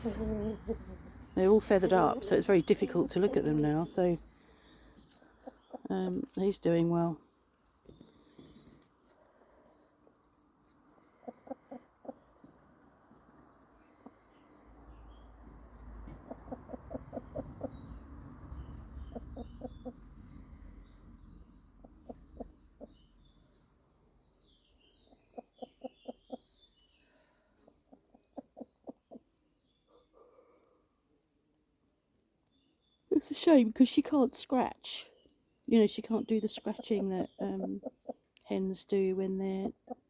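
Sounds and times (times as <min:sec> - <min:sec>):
hens clucking: 0:00.0 - 0:04.3, 0:10.8 - 0:12.6, 0:15.8 - 0:17.9, 0:19.0 - 0:20.1, 0:21.8 - 0:23.0, 0:25.1 - 0:26.5, 0:36.0 - 0:40.0.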